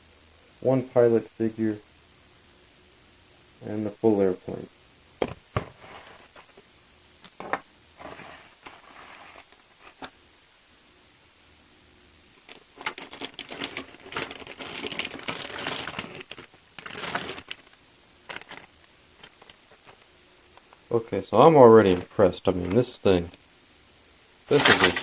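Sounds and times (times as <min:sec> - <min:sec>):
plastic bags crinkling: 0:12.4 - 0:20.1, 0:24.5 - 0:25.0.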